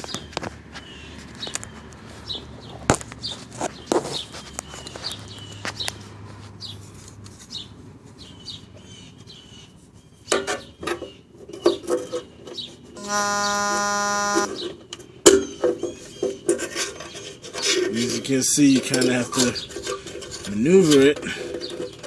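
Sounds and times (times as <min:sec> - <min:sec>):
birds chirping: 0:00.0 - 0:06.8, 0:07.5 - 0:18.4
steady buzzing tone: 0:13.0 - 0:14.5.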